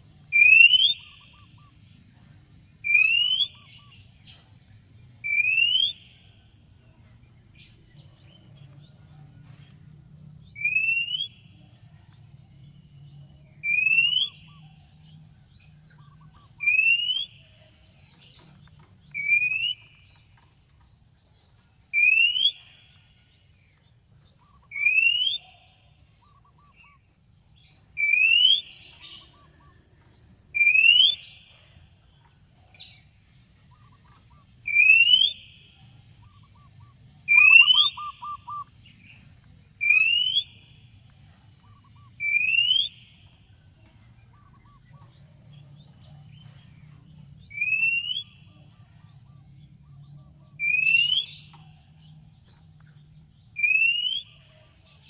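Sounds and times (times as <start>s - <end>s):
bird rising whistle: 37.3s - 38.7s.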